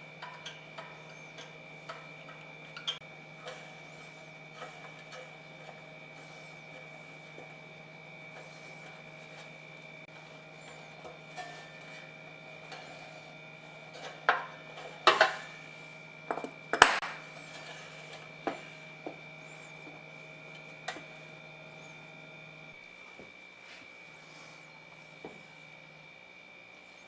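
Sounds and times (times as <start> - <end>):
high whine: 0.0 - 27.0
steady low hum: 0.0 - 27.0.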